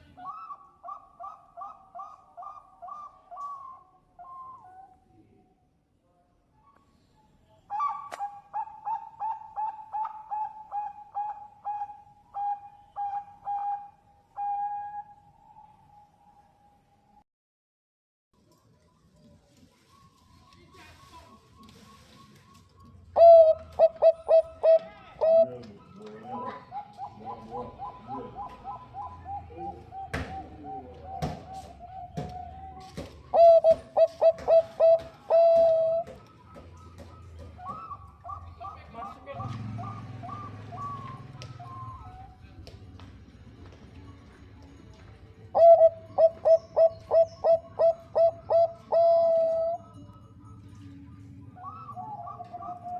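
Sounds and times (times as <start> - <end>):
dove cooing: 0.0 - 4.8, 7.7 - 16.0, 23.1 - 42.6, 45.5 - 50.0, 51.6 - 52.9.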